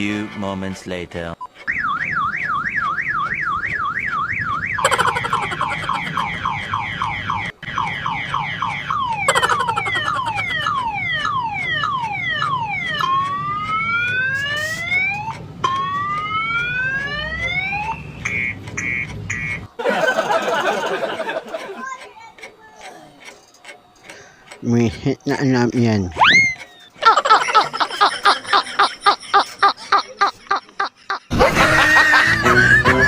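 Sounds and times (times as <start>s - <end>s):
car alarm siren: 1.5s - 19.6s.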